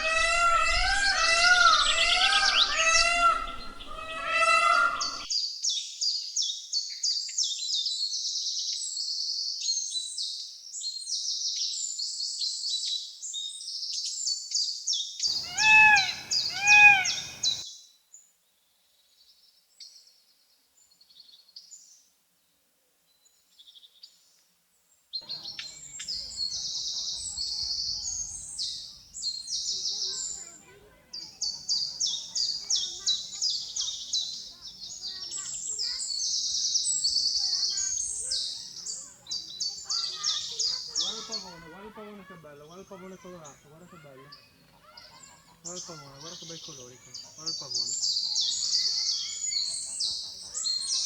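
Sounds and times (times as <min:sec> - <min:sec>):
larger bird arching calls: 0:00.0 - 0:05.3, 0:15.3 - 0:17.6
small birds chirping: 0:00.0 - 0:17.6, 0:25.2 - 0:51.0.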